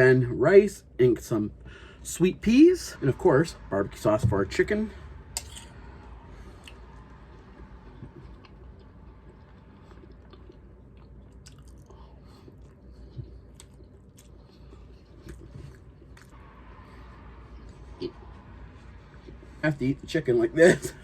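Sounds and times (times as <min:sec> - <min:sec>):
person chewing food: 0:05.4 - 0:19.6.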